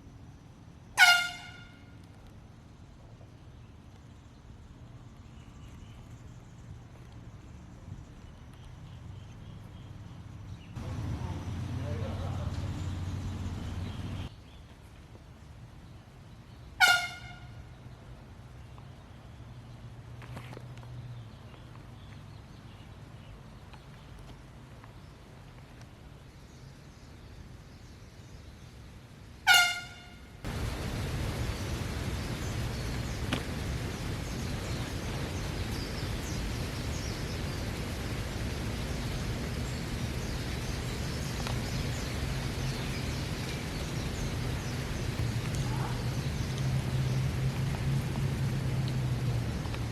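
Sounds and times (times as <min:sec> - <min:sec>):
air horn blast: 0:01.0 - 0:02.0, 0:16.8 - 0:17.6, 0:29.4 - 0:30.4
steady hiss: 0:23.0 - 0:49.9.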